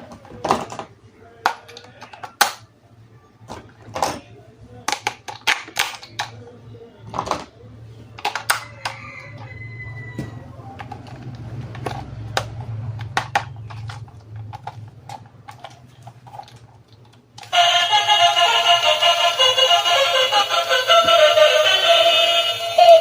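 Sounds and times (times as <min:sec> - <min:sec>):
plastic toy parts clicking: 0:00.1 - 0:02.6, 0:04.8 - 0:06.4, 0:08.2 - 0:09.0, 0:10.8 - 0:17.6
music with electronic singing: 0:17.5 - 0:23.0.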